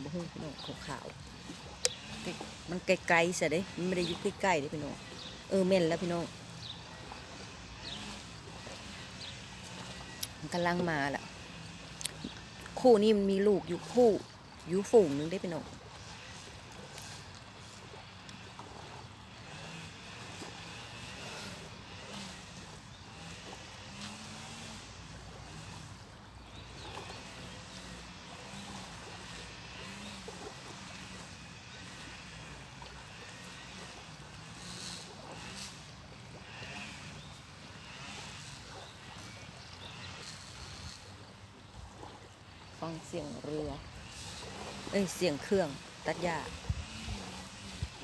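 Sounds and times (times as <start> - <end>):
lake waves lapping: 0.0 - 48.0
small engine droning: 0.0 - 48.0
strong wind: 46.5 - 48.0.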